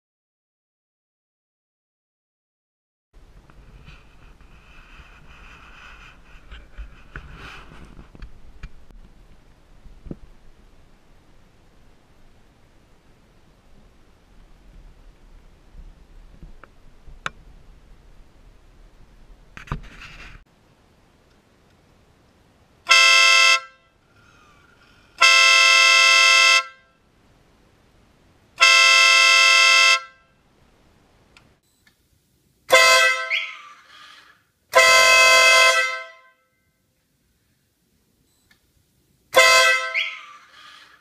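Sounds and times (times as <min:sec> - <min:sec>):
motorcycle air horn blasts: 0:22.9 - 0:24.0, 0:25.2 - 0:26.9, 0:28.6 - 0:30.3, 0:32.7 - 0:33.6, 0:34.7 - 0:36.5, 0:39.3 - 0:40.4.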